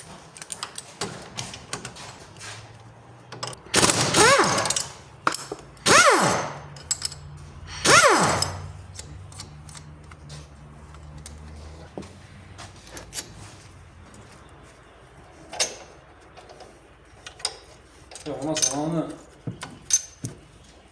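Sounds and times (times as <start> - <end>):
pneumatic impact wrench: 3.6 - 9.8.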